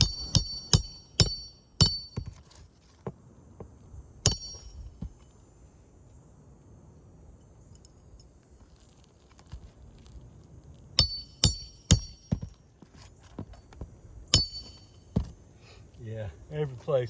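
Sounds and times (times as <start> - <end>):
metal tool clinking on metal: 4.3 - 5.4, 14.3 - 15.4.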